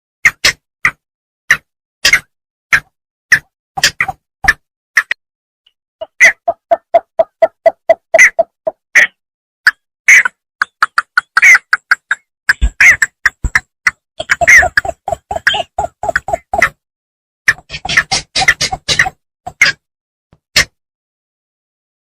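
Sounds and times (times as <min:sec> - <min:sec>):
bittern calling: 0:14.2 - 0:16.8.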